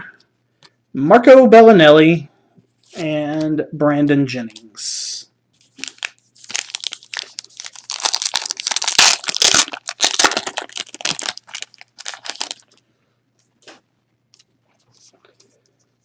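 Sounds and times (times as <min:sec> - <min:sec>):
foil wrapper crinkling and tearing: 0:05.7 - 0:12.8.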